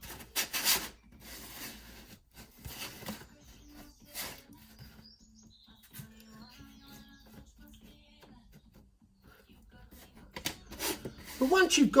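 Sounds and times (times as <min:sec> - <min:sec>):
wood flooring pieces scraping: 0:10.5 - 0:12.0.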